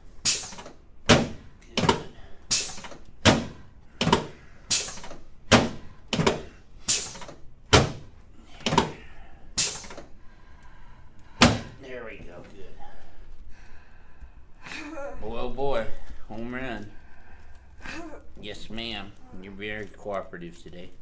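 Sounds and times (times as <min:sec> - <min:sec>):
sharp thuds: 0:00.2 - 0:10.1, 0:11.4 - 0:11.8.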